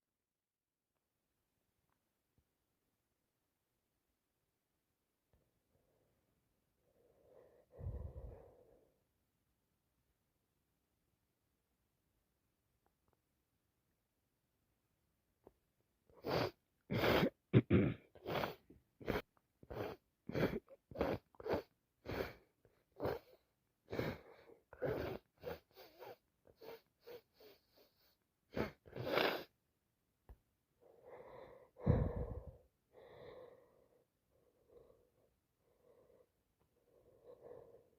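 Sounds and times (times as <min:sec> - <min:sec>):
heavy breathing: 0:06.9 - 0:09.0, 0:30.8 - 0:37.9.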